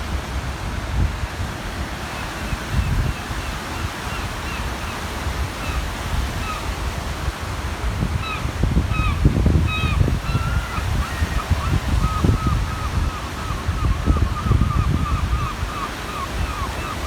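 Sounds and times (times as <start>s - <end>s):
small waves breaking on shore: 0.0s - 17.0s
wind buffeting microphone: 0.0s - 17.0s
gulls calling: 8.2s - 17.0s.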